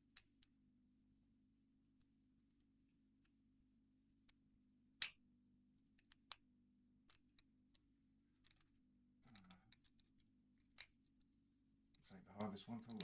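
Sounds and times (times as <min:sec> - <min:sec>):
lock pick clicking in padlock: 0:05.0 - 0:05.2.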